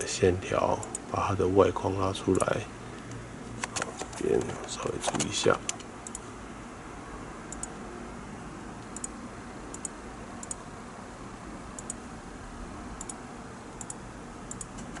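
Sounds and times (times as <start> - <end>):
low background hiss: 0.0 - 3.6.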